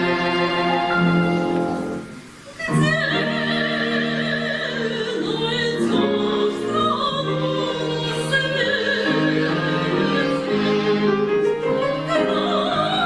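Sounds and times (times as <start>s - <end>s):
orchestral accompaniment with strings: 0.0s - 4.4s, 5.3s - 13.0s
woman singing operatically: 2.5s - 10.8s, 11.7s - 13.0s.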